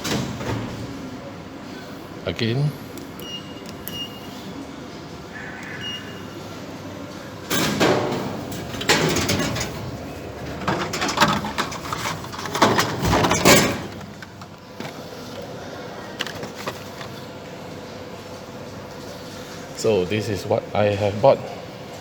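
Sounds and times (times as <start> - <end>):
vending machine rattling and knocking: 7.5 - 15.0.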